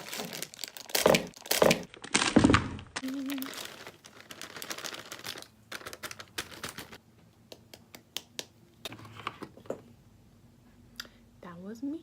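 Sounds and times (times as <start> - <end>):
packaging crinkling: 0.0 - 7.0.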